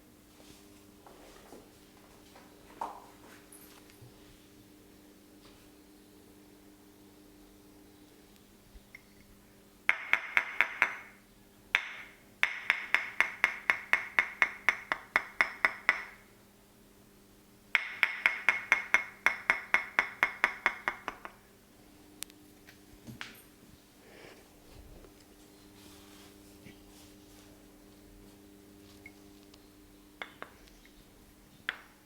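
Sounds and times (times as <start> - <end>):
sharp bright taps: 11.7 - 16.2, 17.8 - 21.4.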